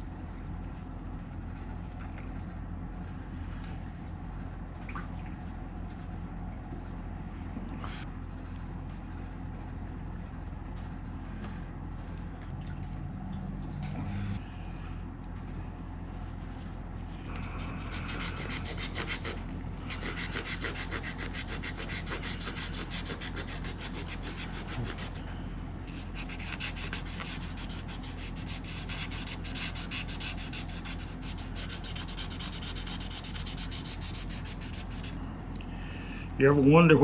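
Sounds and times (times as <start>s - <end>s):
low hum: 0.0s - 37.0s
sanding strokes on steel: 17.8s - 25.2s, 25.9s - 35.2s.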